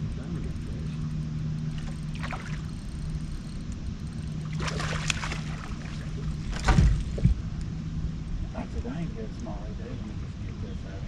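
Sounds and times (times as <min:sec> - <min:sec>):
boat motor humming: 0:00.0 - 0:11.0
water splashing: 0:01.7 - 0:02.8, 0:04.4 - 0:07.4.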